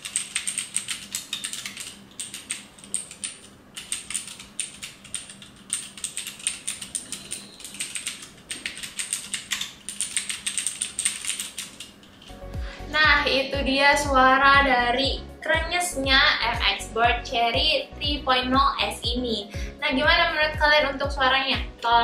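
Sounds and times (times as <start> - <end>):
clicky mechanical keyboard typing: 0.0 - 12.4.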